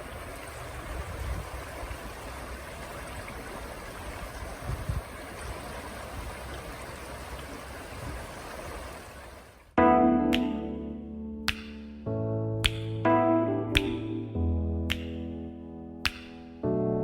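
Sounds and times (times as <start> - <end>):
flowing river water: 0.0 - 9.8.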